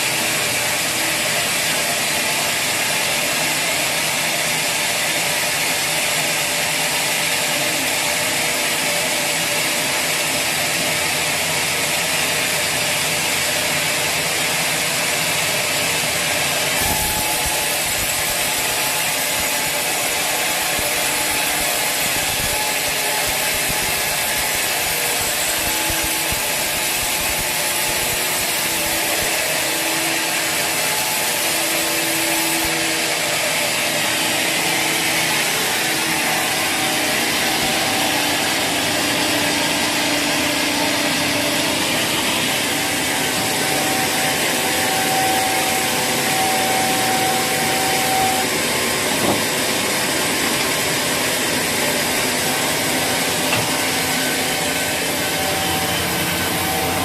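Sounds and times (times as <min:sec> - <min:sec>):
saw cutting through wood: 0:00.0 - 0:57.0
machine humming tones: 0:16.8 - 0:31.0, 0:51.6 - 0:57.0.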